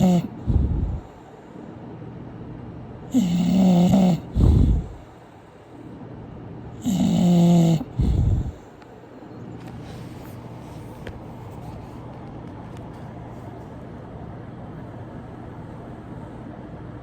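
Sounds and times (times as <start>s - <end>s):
dog snoring: 0.0s - 1.1s, 3.1s - 5.2s, 6.8s - 8.7s
low rumbling snort: 0.0s - 1.1s, 3.1s - 5.2s, 6.8s - 8.7s.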